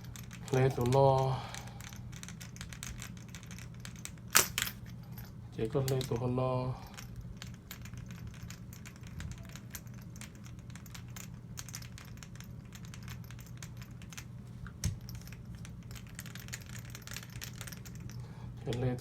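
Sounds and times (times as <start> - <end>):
metal parts clicking and tapping: 0.0 - 19.0
steady low hum: 0.0 - 19.0.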